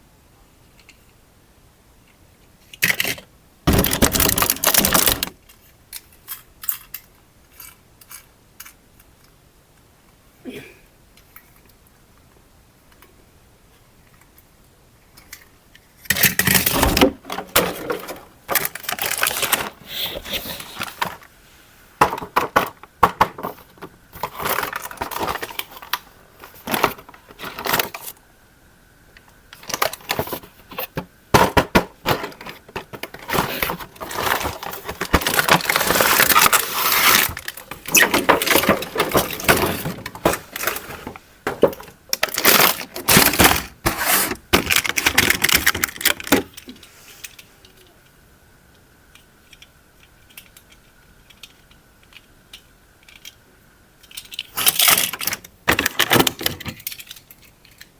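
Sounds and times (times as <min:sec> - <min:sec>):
packaging crinkling: 0:02.9 - 0:05.4, 0:16.1 - 0:21.4, 0:22.1 - 0:28.2, 0:29.6 - 0:46.6.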